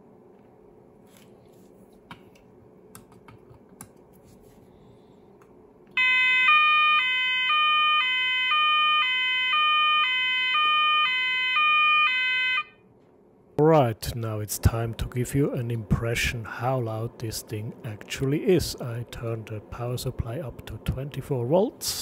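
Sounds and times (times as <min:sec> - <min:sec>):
two-tone fire alarm: 0:06.0 - 0:12.8.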